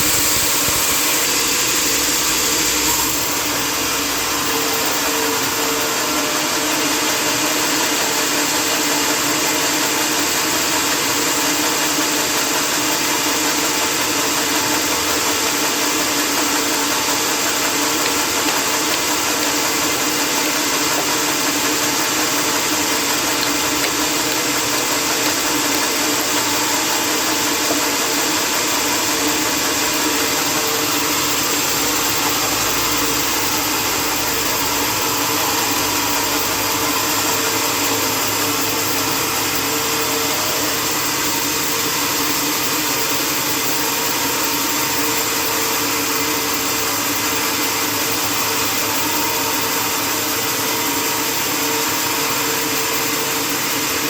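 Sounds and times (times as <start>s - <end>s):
sawmill machinery running: 0.0s - 54.0s
steady hum: 12.6s - 54.0s.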